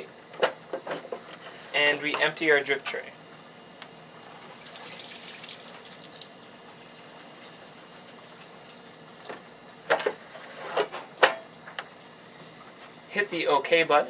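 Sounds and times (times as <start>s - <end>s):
liquid pouring and splashing: 4.6s - 6.6s.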